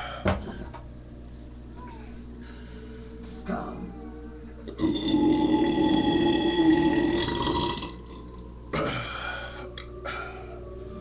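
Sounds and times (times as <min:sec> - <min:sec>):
person belching: 0:04.7 - 0:09.1.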